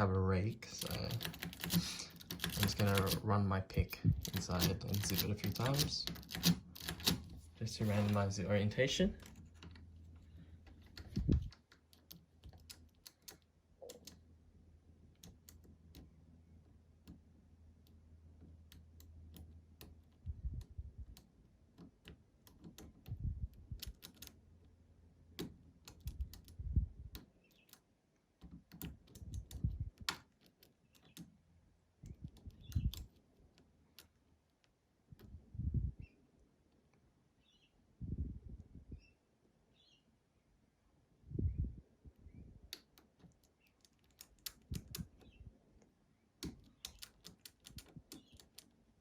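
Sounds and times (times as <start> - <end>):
lock pick clicking: 4.2 - 7.3.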